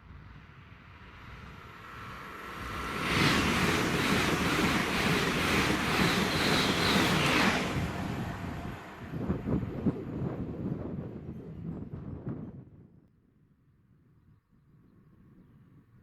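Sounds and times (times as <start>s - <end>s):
train passing at speed: 0.0s - 12.6s.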